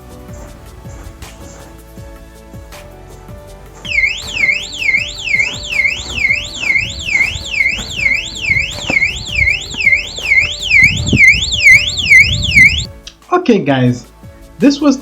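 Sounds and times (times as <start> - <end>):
electronic alarm siren warbling: 3.9 - 12.9.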